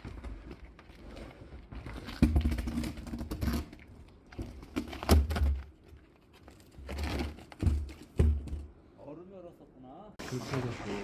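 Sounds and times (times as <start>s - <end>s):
objects knocking and thumping: 6.8s - 8.8s.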